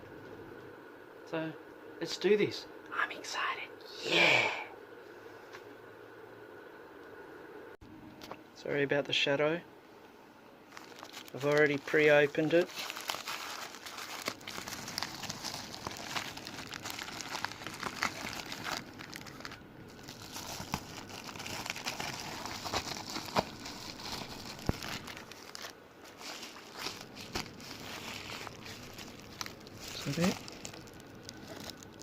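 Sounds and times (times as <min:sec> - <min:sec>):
plastic packaging crinkling: 0:10.7 - 0:32.0.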